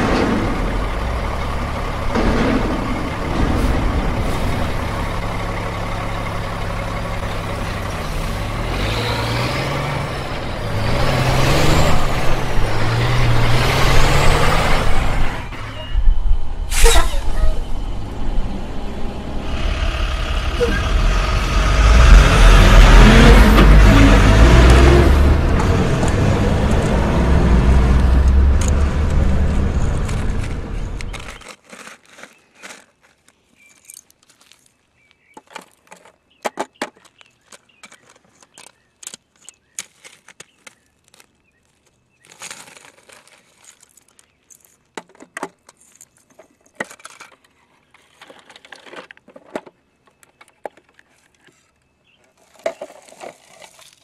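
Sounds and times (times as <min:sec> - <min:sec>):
truck engine rumbling: 0:00.0 - 0:31.4.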